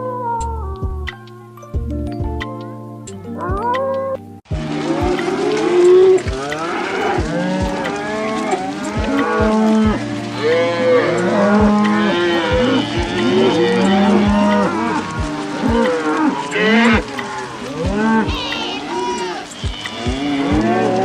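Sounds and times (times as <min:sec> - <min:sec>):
cattle mooing: 0:04.7 - 0:21.0.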